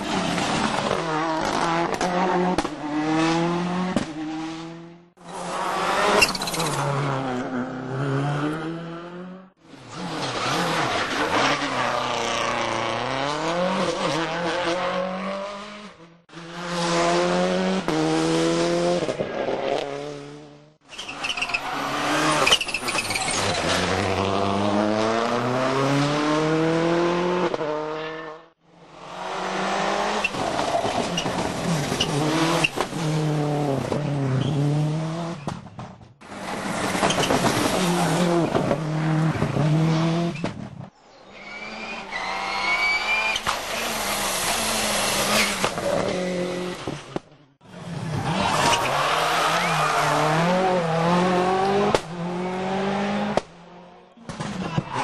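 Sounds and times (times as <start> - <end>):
rally car engines revving: 0.0 - 40.8, 41.5 - 55.0
tyre squeal: 6.1 - 6.8, 20.9 - 23.7, 41.1 - 46.0.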